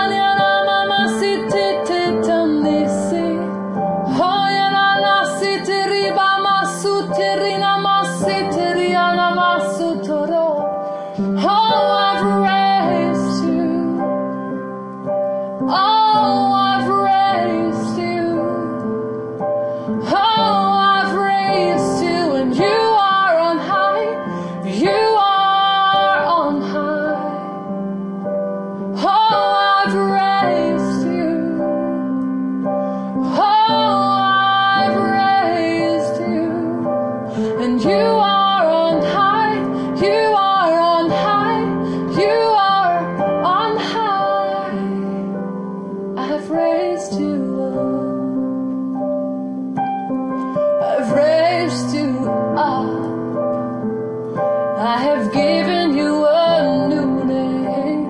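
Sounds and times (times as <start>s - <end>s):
woman singing wordless phrases: 0.0s - 10.6s, 11.4s - 14.1s, 20.1s - 27.6s, 29.0s - 31.9s, 33.3s - 45.2s, 46.2s - 48.4s, 50.8s - 53.1s, 54.8s - 58.0s
piano chords: 0.0s - 58.0s.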